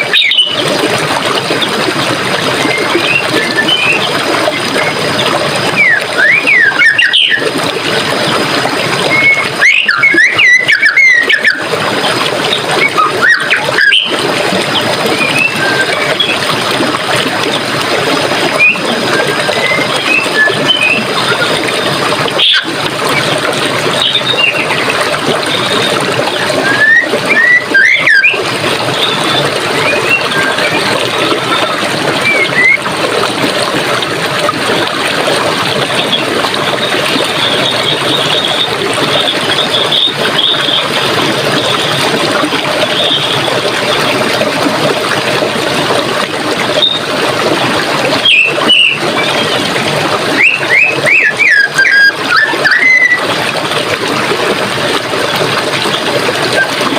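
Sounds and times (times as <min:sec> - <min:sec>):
birds chirping: 0:00.0 - 0:00.7, 0:05.7 - 0:07.5, 0:12.5 - 0:14.2, 0:23.9 - 0:28.4, 0:48.2 - 0:49.6
stream water running: 0:00.0 - 0:56.9.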